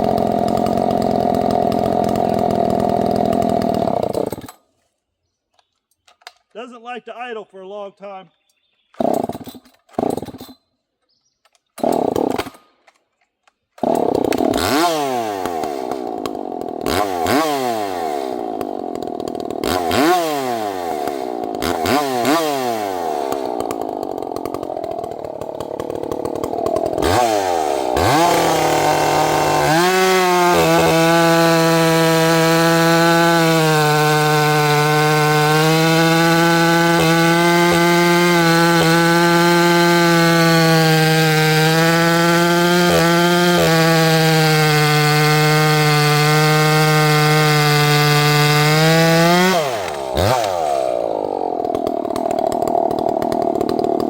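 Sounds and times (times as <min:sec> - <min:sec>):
chainsaw revving: 0:00.0 - 0:04.6, 0:09.0 - 0:10.5, 0:11.8 - 0:12.7, 0:13.8 - 0:54.0.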